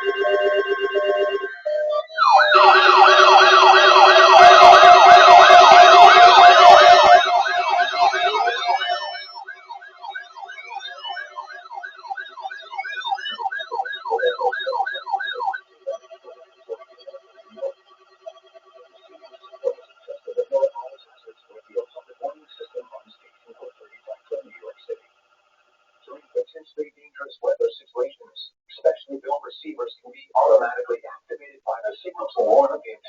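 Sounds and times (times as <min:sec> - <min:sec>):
weather alert radio alarms warbling: 0:00.0 - 0:17.8, 0:19.5 - 0:24.9, 0:30.3 - 0:33.0
steady alarm tone: 0:00.0 - 0:20.8.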